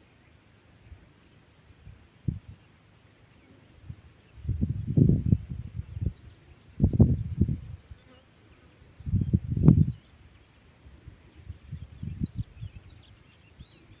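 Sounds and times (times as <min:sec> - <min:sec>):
faint bird chirps: 0:08.0 - 0:14.0.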